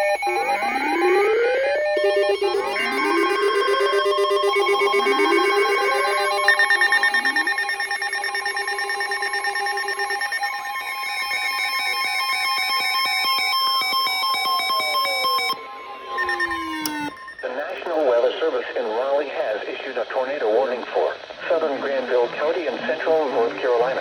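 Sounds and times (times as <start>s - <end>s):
electronic tone sweeps: 0.0s - 17.6s
steady high alert tone: 0.0s - 17.9s
trilling electronic beeps: 0.0s - 17.9s.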